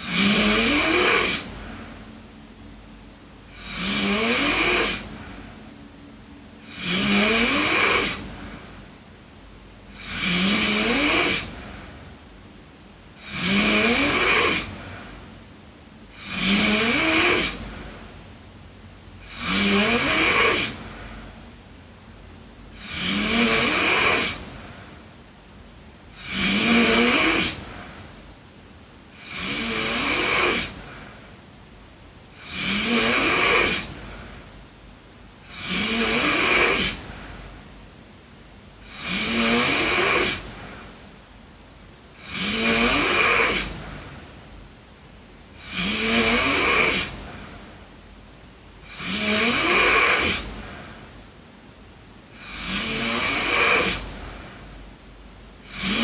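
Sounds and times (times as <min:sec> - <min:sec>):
girl snoring: 0:00.0 - 0:02.1, 0:03.4 - 0:05.7, 0:06.6 - 0:08.9, 0:09.9 - 0:12.1, 0:13.2 - 0:15.2, 0:16.1 - 0:18.1, 0:19.2 - 0:21.4, 0:22.7 - 0:25.1, 0:26.1 - 0:28.0, 0:29.1 - 0:31.3, 0:32.3 - 0:34.5, 0:35.4 - 0:37.5, 0:38.8 - 0:41.0, 0:42.1 - 0:44.3, 0:45.6 - 0:47.8, 0:48.8 - 0:51.1, 0:52.3 - 0:54.8, 0:55.6 - 0:56.0.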